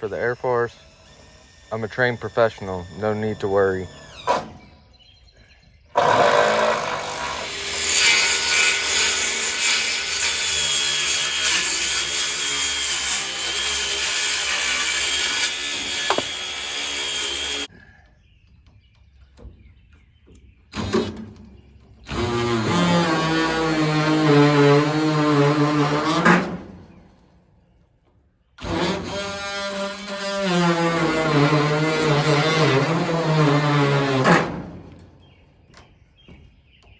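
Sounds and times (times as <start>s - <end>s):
power saw cutting wood: 0.0s - 4.7s, 6.0s - 17.7s, 22.0s - 26.9s, 28.6s - 35.0s.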